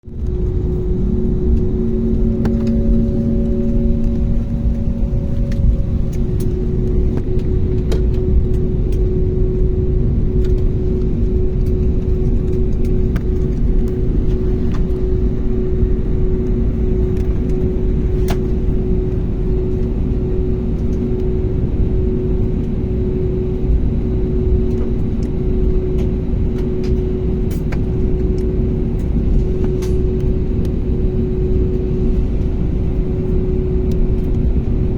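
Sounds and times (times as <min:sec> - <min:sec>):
vehicle interior rumble: 0:00.1 - 0:20.1.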